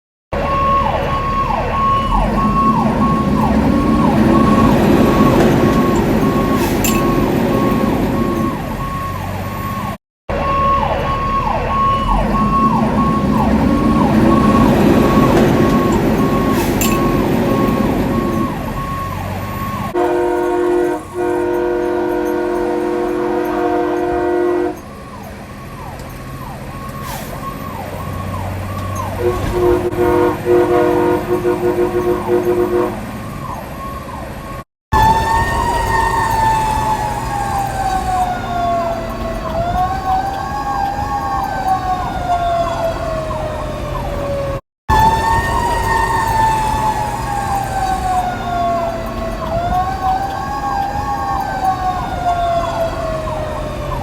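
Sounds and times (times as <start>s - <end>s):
engine rumble: 0.3s - 54.0s
fire engine siren sweeping: 0.3s - 54.0s
train horn chord: 20.0s - 24.9s, 29.2s - 33.1s.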